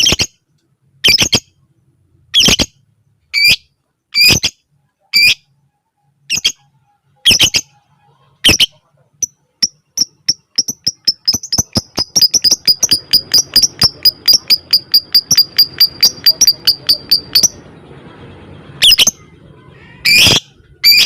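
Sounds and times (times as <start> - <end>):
harsh bird squawk: 2.3 - 5.5, 6.3 - 8.8, 18.8 - 21.0
bird ticking chirps: 8.5 - 17.7, 18.8 - 19.3.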